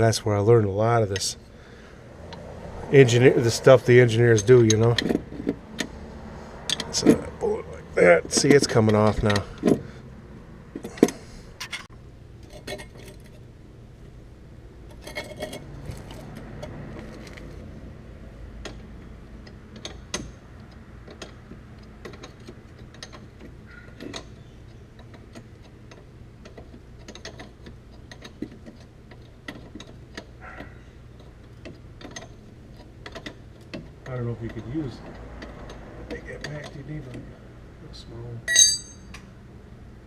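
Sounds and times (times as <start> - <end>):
hand tools clicking and clinking on metal: 3.6 - 5.9, 6.6 - 7.3, 8.0 - 9.9, 10.8 - 13.4, 18.6 - 37.2, 38.5 - 39.2.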